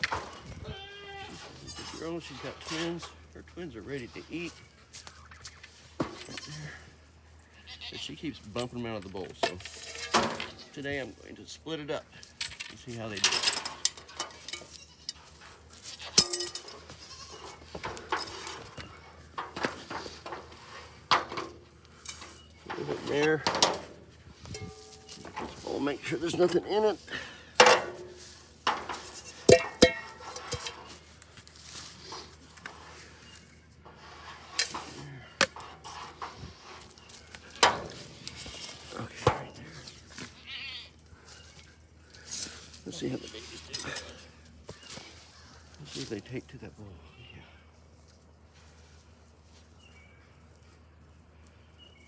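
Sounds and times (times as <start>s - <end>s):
goats bleating: 0.6s - 2.6s, 6.2s - 8.4s, 14.6s - 17.8s, 28.8s - 29.6s, 38.5s - 41.0s
feed bowls clattering: 9.0s - 10.8s, 12.4s - 15.3s, 16.0s - 31.2s
bucket knocks and clatters: 22.7s - 25.6s, 27.6s - 31.0s.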